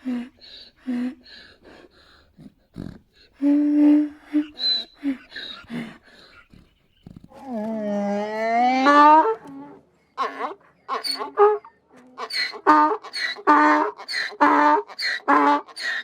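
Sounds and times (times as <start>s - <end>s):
donkey braying: 3.4s - 16.0s.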